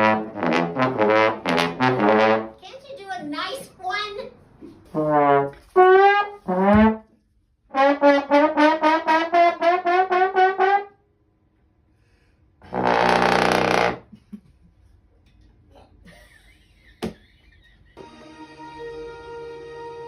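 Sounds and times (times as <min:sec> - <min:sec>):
comic brass notes: 0:00.0 - 0:02.6, 0:04.9 - 0:07.1, 0:07.7 - 0:11.0, 0:12.6 - 0:14.1, 0:18.0 - 0:20.0.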